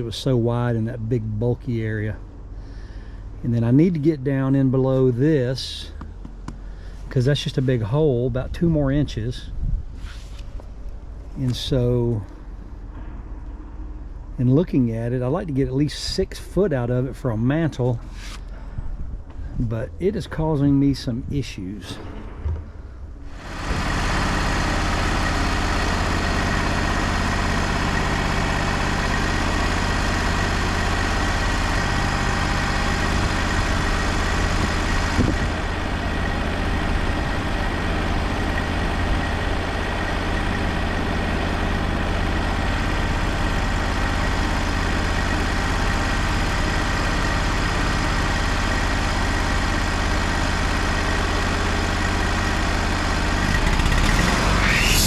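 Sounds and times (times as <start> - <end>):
band sawmill running: 23.2 - 55.0.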